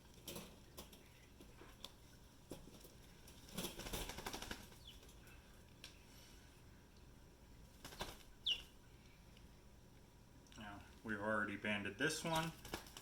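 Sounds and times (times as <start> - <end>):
quail flapping wings: 0.2 - 5.3, 7.6 - 8.8, 12.2 - 13.0.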